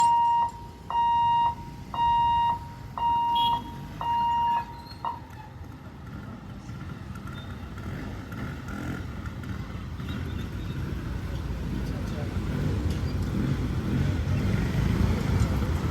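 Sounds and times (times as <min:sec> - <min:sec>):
level crossing warning beeps: 0:00.0 - 0:05.2.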